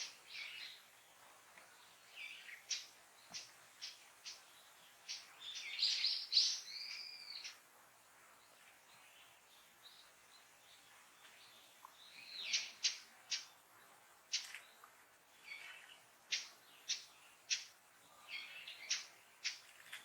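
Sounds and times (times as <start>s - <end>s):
small songbird calling: 0.0s - 1.0s, 1.8s - 7.6s, 8.9s - 13.6s, 15.4s - 19.7s.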